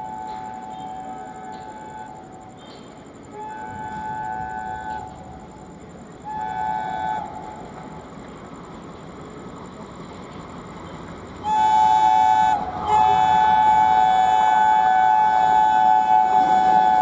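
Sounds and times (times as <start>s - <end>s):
locomotive air horn blasts: 0.0s - 5.3s, 6.2s - 7.5s, 11.4s - 17.0s
passing train rumble: 0.0s - 17.0s.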